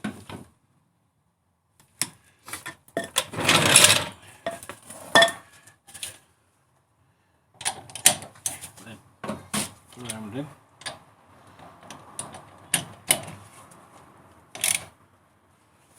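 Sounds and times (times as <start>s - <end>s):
jack and hand tools clanking: 2.6s - 5.4s
rattling metal scrape: 3.0s - 4.2s.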